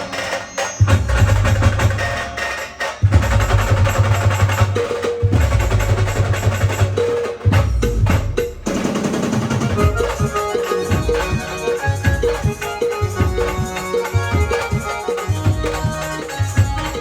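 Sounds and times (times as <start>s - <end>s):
loud drums: 0.0s - 17.0s.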